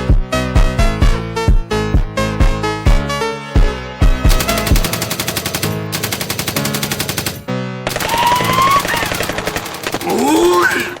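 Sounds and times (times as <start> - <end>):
music: 0.0 - 11.0
machine-gun sound effect: 4.3 - 11.0.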